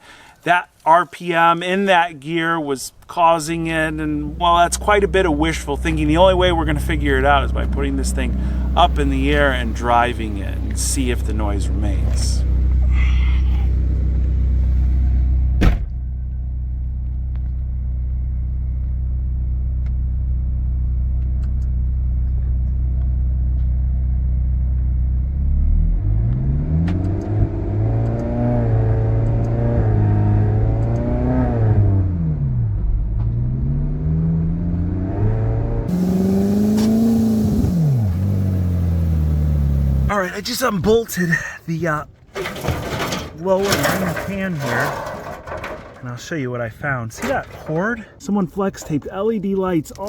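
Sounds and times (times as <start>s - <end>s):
car engine idling and revving: 3.5s - 40.4s.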